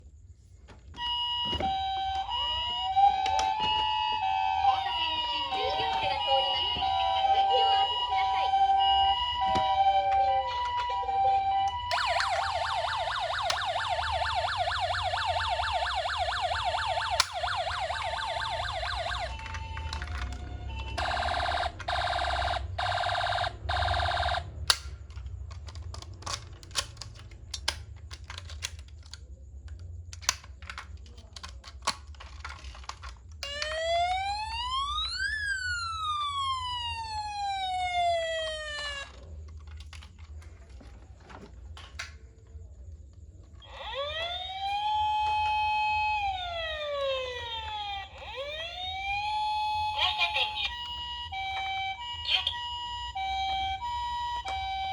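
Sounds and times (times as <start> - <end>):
siren wail rising and falling: 1.0 - 24.5, 33.5 - 39.1, 43.6 - 54.9
toy siren warbling: 1.0 - 24.9, 33.4 - 39.3, 43.6 - 54.9
sharp clicks: 24.2 - 25.3.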